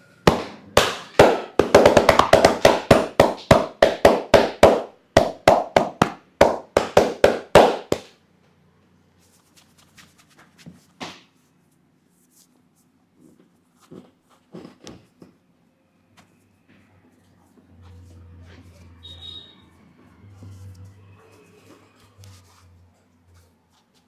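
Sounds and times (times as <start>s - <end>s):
rhythmic hand slaps massage: 0.2s - 8.2s.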